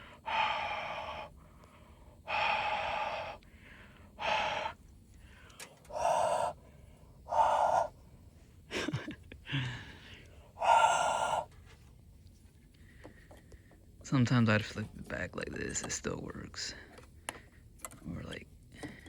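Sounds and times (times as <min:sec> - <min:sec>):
person blowing forceful breaths: 0:00.0 - 0:08.0, 0:09.5 - 0:11.6.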